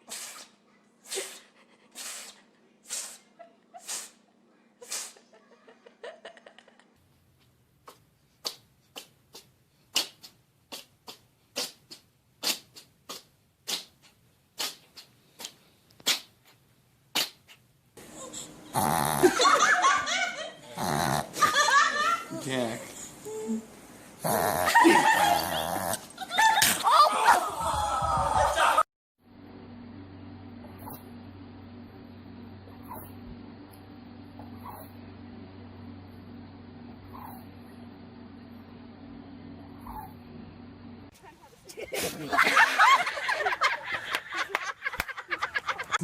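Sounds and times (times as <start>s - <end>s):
small animal sneezing: 0.0s - 4.2s, 4.8s - 5.3s, 7.8s - 17.6s, 34.6s - 35.0s, 37.1s - 37.5s
loud laughter: 5.2s - 6.9s, 19.1s - 22.4s, 24.6s - 28.8s, 41.7s - 46.0s.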